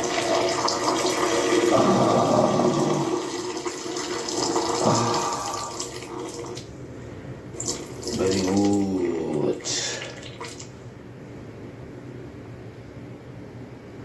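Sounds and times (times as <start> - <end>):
tap water running into sink: 0.0 - 6.7, 7.6 - 10.7.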